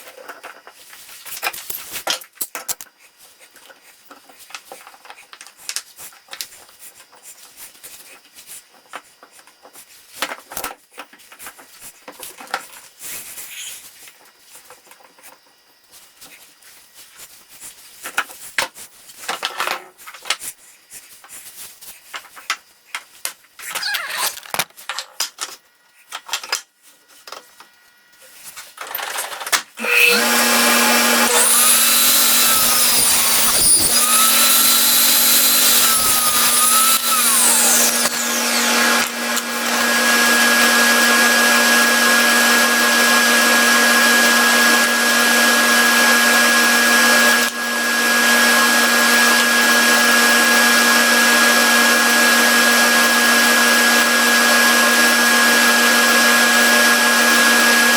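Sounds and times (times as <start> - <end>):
power tool motor whining: 29.8 - 57.9.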